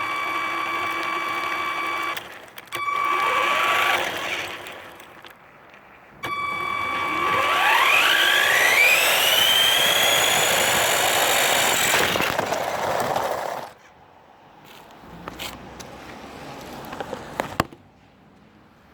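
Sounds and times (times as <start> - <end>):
toy car electric motor whine: 0.0 - 5.3, 6.2 - 13.7.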